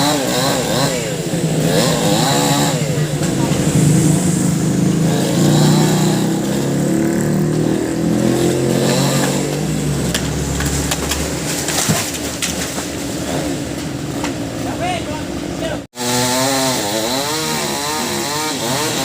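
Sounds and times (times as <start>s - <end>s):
chainsaw engine revving: 0.0s - 11.9s, 16.0s - 19.0s.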